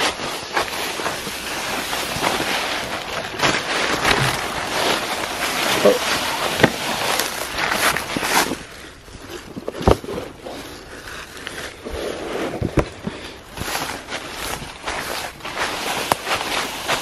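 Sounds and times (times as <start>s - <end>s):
footsteps: 0.0s - 8.7s
sled scraping over grass: 0.0s - 17.0s.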